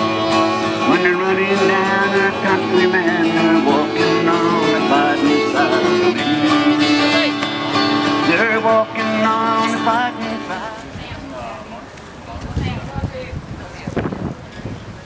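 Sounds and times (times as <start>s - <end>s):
fiddle melody: 0.0s - 10.8s
acoustic guitar: 0.0s - 12.2s.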